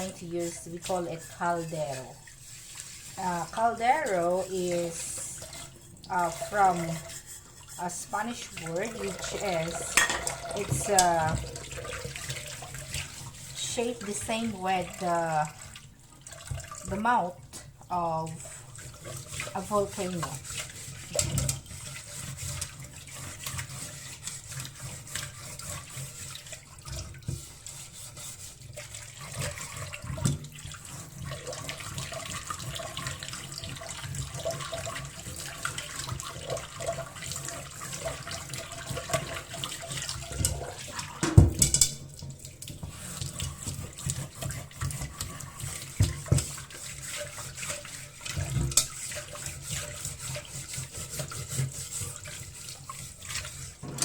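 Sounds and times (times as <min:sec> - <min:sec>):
tap running into sink: 0:09.0 - 0:12.2, 0:38.9 - 0:46.7, 0:53.8 - 0:54.0
objects knocking in water: 0:09.2 - 0:11.6, 0:40.3 - 0:42.2.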